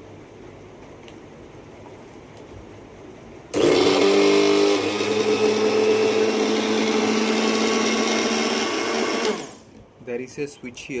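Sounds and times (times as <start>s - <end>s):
mixer grinder motor whine: 3.5s - 9.7s.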